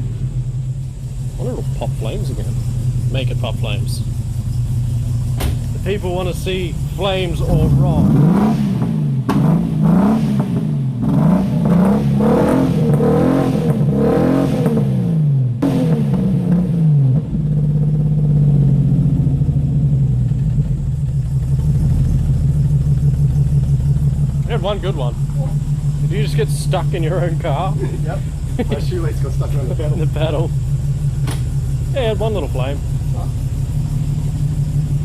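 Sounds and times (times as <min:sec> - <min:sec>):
engine idling: 0:00.0 - 0:15.7, 0:16.4 - 0:35.0
car engine revving: 0:00.0 - 0:35.0
exhaust pop: 0:00.0 - 0:35.0.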